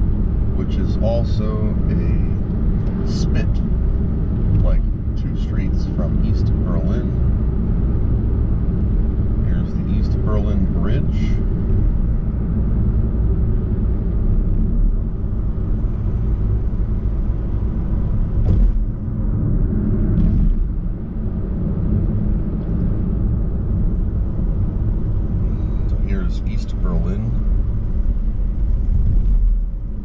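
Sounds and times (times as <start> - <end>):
car road rumble inside cabin: 0.0 - 30.0
sharp knock: 18.4 - 18.9.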